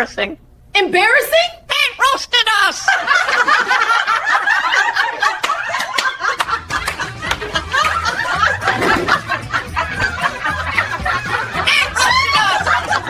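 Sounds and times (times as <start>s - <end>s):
people laughing and snickering: 2.7s - 13.0s.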